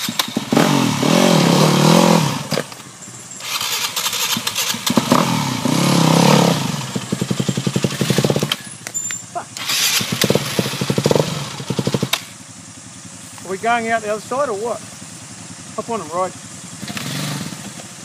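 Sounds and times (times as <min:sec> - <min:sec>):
motorcycle engine revving: 0:00.0 - 0:18.0.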